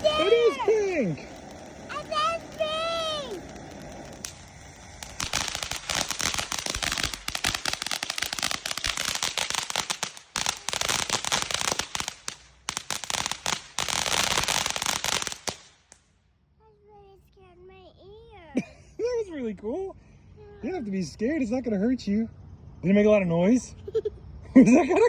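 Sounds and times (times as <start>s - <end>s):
firework crackling: 0.0s - 16.2s.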